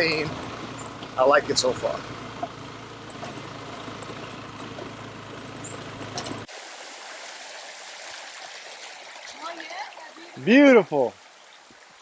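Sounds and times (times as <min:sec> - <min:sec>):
motorbike engine running: 0:00.0 - 0:06.5
road and wind noise: 0:00.0 - 0:09.3.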